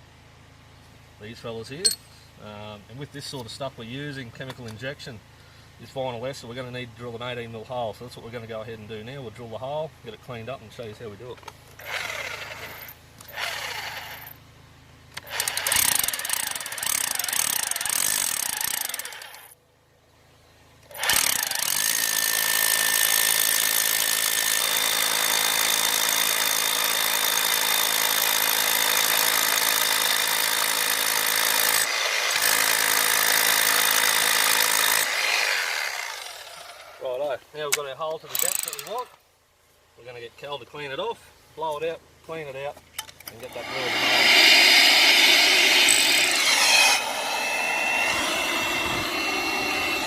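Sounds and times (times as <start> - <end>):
hammer drill boring into concrete: 11.8 - 14.4, 15.2 - 19.5, 20.9 - 37.0, 38.3 - 39.1, 43.4 - 50.0.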